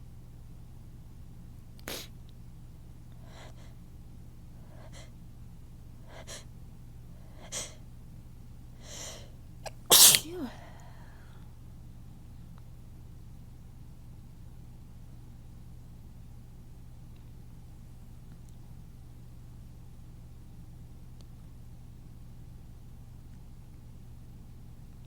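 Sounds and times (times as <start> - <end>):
person sneezing: 8.9 - 10.8.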